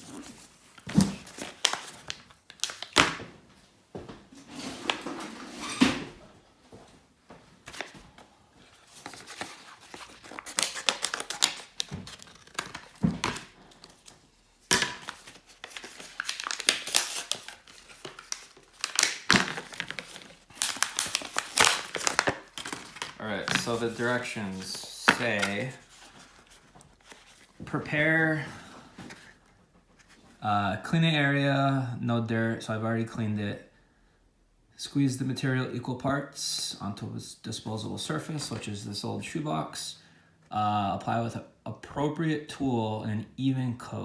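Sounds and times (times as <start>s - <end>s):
plastic crinkling and rustling: 0.0s - 3.2s, 7.5s - 30.3s.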